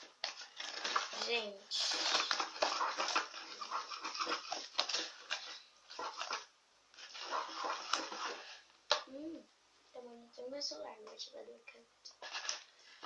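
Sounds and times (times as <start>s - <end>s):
slime squishing and crackling: 0.0s - 8.6s.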